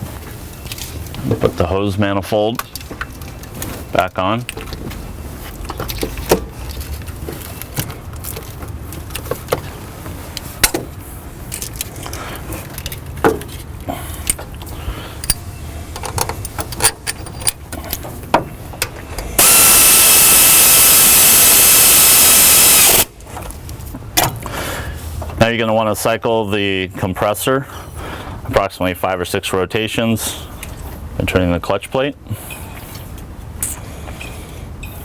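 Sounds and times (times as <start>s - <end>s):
power tool hissing whir: 19.4s - 23.2s.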